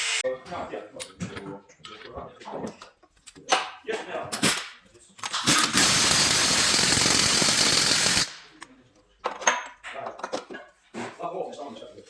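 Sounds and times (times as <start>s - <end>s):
power impact tool hammering: 5.4s - 8.5s.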